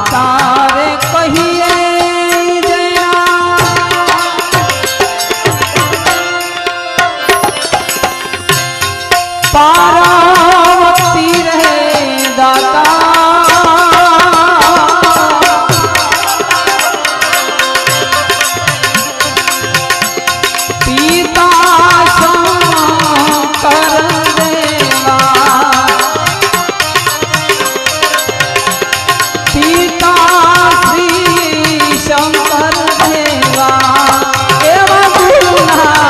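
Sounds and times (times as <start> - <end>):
harmonium melody: 0.0 - 36.0
hand drum beat: 10.3 - 36.0.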